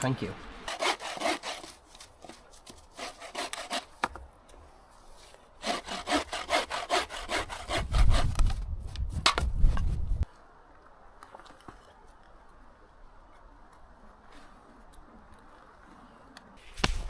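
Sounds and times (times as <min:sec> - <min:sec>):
hand saw cutting wood: 0:00.6 - 0:04.1, 0:05.6 - 0:08.6.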